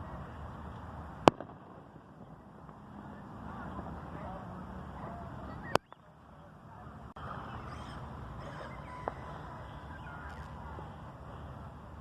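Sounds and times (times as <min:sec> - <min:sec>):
outdoor background noise: 0:00.0 - 0:12.0
firework bang: 0:01.2 - 0:02.8.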